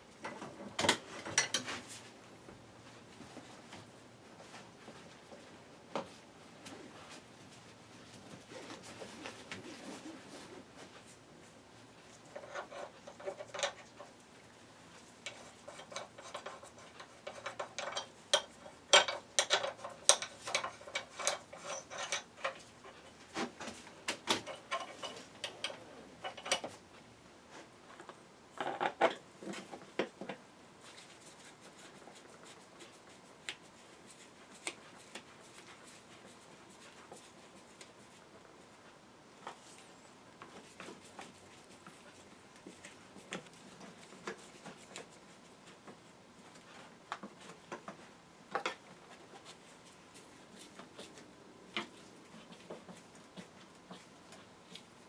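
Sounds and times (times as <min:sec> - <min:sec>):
metal tools clinking and rattling: 0:15.3 - 0:22.6.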